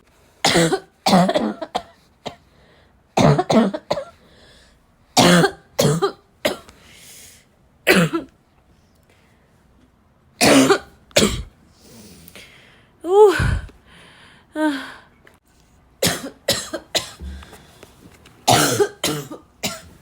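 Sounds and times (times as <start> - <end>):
woman coughing: 0.5 - 2.0, 3.2 - 4.1, 5.2 - 6.7, 7.9 - 8.3, 10.4 - 11.5, 16.0 - 17.3, 18.5 - 19.9
faint breaths: 2.0 - 3.1, 4.1 - 4.9, 8.7 - 9.8, 11.7 - 15.2, 17.2 - 18.2.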